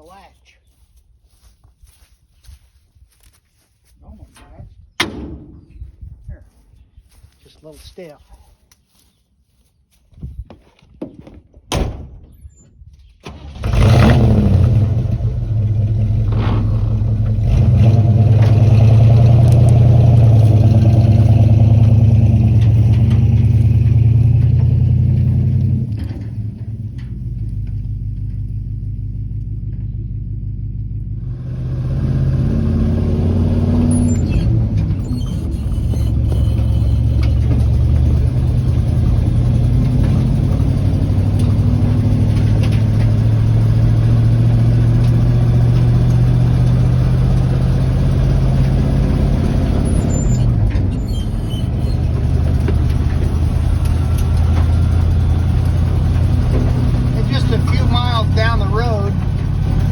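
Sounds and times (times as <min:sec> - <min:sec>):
road noise: 0:00.0 - 0:10.9, 0:13.2 - 0:59.9
truck engine running: 0:13.6 - 0:59.9.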